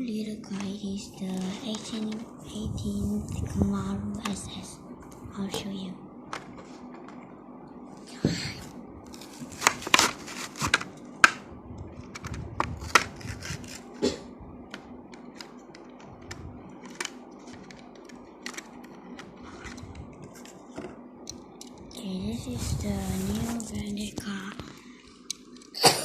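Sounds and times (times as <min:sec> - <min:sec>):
plastic blister pack crackling: 0:09.1 - 0:11.4, 0:14.7 - 0:20.6.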